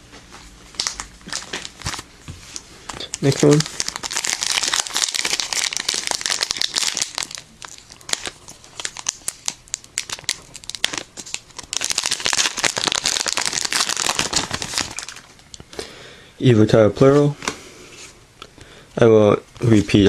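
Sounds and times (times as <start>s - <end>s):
foil wrapper crinkling and tearing: 0.8s - 2.1s, 2.8s - 15.4s.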